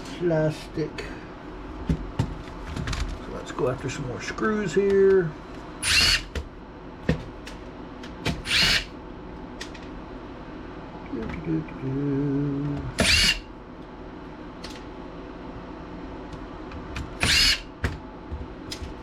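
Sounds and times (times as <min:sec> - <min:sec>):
power driver whining: 0:05.8 - 0:06.5, 0:08.1 - 0:09.0, 0:11.1 - 0:13.6, 0:16.7 - 0:18.0
low wavering hum: 0:09.0 - 0:16.7.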